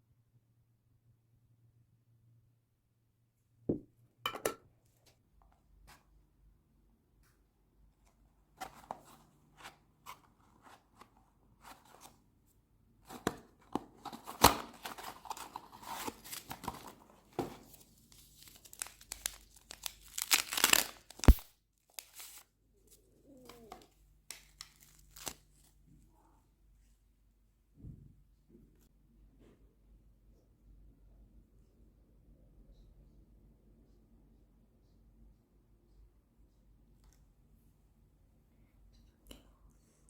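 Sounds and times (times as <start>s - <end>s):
packaging crinkling and tearing: 18.1s - 22.5s, 24.3s - 25.7s.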